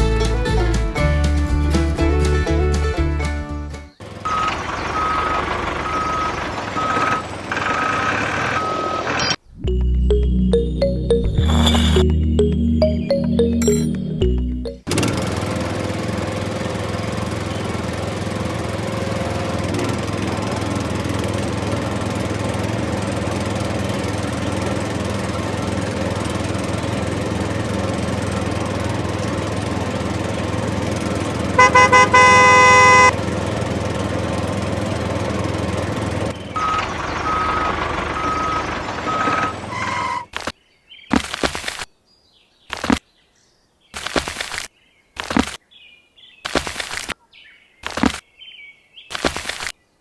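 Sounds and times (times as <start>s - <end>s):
vehicle engine and traffic: 3.9s - 41.8s
short beeps: 9.7s - 14.8s
car horn tooting: 31.6s - 33.2s.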